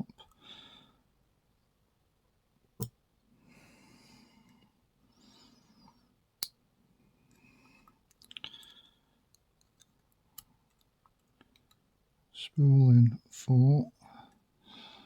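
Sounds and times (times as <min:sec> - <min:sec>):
soft breathing: 0:00.2 - 0:01.1, 0:03.3 - 0:06.2, 0:07.0 - 0:09.3, 0:14.0 - 0:15.0
small metal clicks of lock parts: 0:08.1 - 0:11.8.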